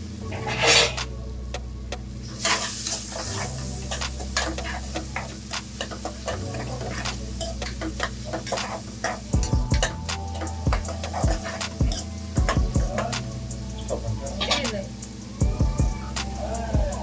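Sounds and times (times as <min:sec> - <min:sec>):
onions sizzling in a pan: 0:02.1 - 0:15.4
loud hiss: 0:02.2 - 0:17.0.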